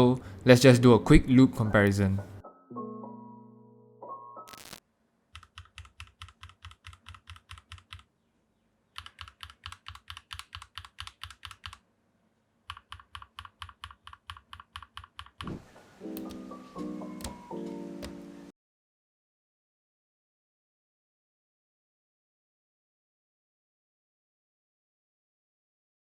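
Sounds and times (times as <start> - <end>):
mechanical keyboard keys clacking: 5.4 - 8.1, 9.0 - 11.8, 12.7 - 16.4, 17.0 - 18.2.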